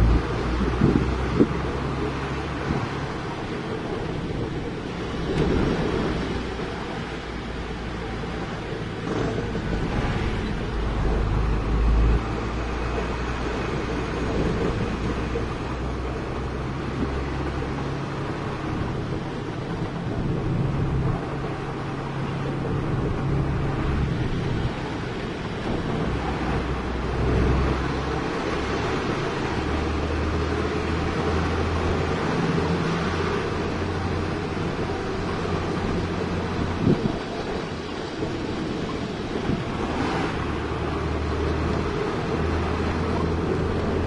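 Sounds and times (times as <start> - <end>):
diesel engine revving: 9.0 - 19.1.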